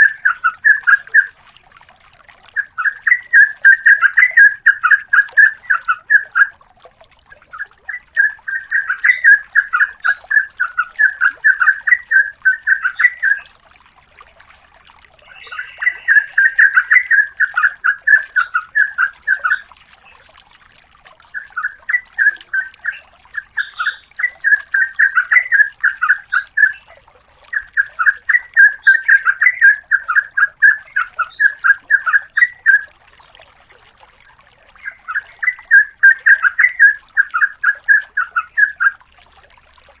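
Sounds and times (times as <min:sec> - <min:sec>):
bulbul singing rapid notes: 0:07.4 - 0:13.5, 0:15.2 - 0:20.3, 0:21.0 - 0:33.0.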